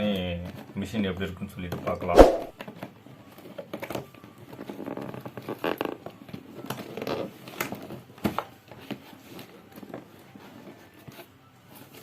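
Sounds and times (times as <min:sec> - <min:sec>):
sharp knock: 0:02.2 - 0:02.5.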